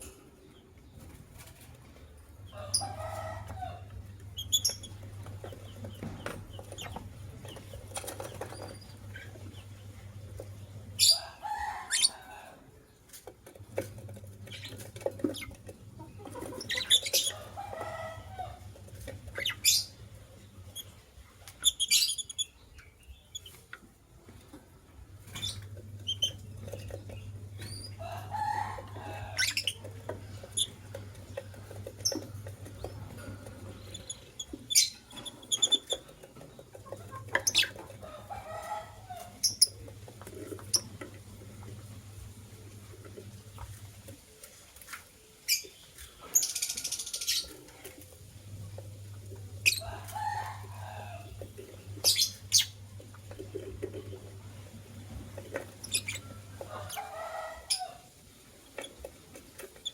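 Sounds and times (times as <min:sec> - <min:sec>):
low steady hum: 0:12.4 - 0:59.6
lovebirds chirping: 0:14.4 - 0:18.6, 0:48.9 - 0:52.9.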